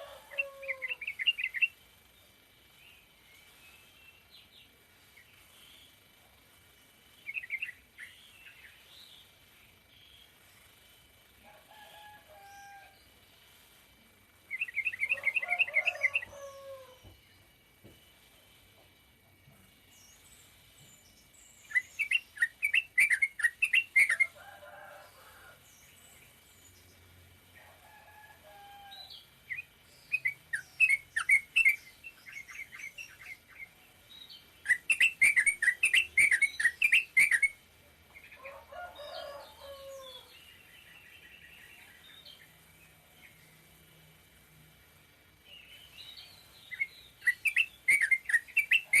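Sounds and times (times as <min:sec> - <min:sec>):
bird chattering song: 0:00.0 - 0:01.8, 0:14.5 - 0:17.0, 0:20.0 - 0:24.4, 0:29.5 - 0:38.4, 0:45.6 - 0:49.0.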